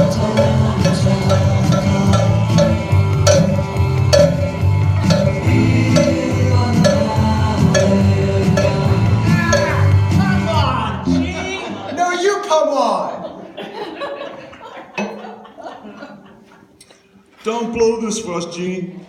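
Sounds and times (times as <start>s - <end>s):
cowbell struck in rhythm: 0.0s - 11.7s
rock band music: 0.0s - 11.9s.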